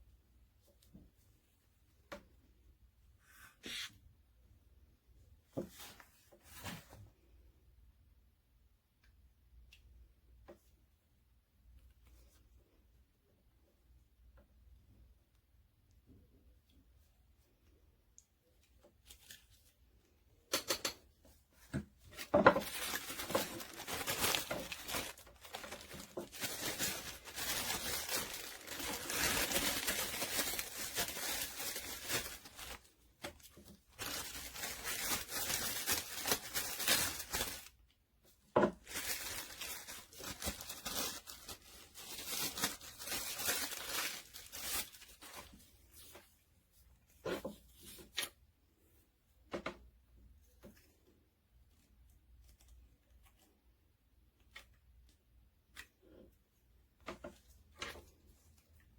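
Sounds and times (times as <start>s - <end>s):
material rustling and tearing: 22.0s - 37.8s, 38.7s - 46.4s.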